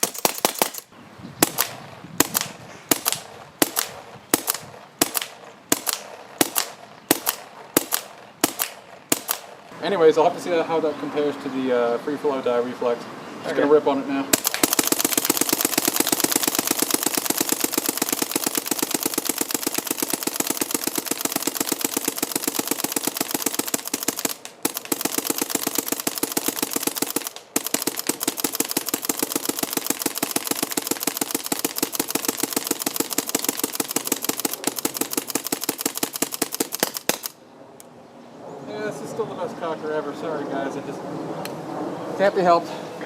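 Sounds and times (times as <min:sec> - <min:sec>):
paintball marker rapid firing: 0:00.0 - 0:09.6, 0:14.3 - 0:37.4.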